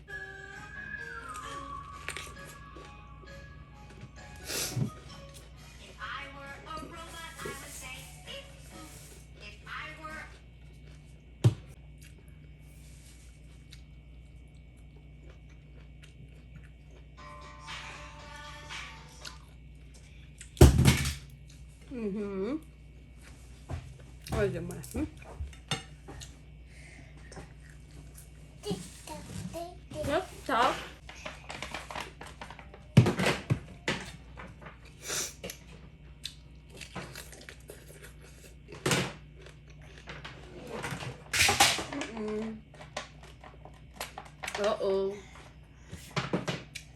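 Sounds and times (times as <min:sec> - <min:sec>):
steady low hum: 0:00.0 - 0:46.9
person chewing food: 0:01.2 - 0:03.0, 0:10.6 - 0:12.6, 0:13.3 - 0:17.2, 0:19.2 - 0:20.6, 0:25.6 - 0:28.4, 0:34.8 - 0:40.2.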